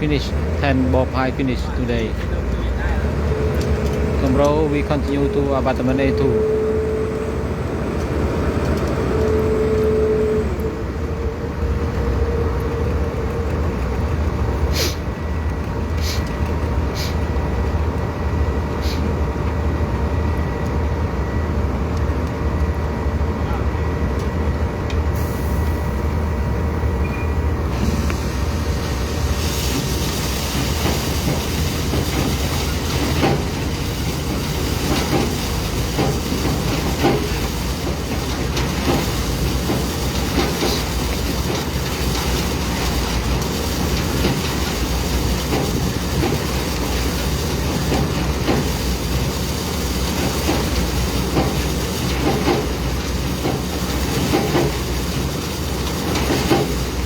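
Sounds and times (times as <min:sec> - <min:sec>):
machinery knocks and clanks: 0:00.0 - 0:06.3, 0:29.6 - 0:57.0.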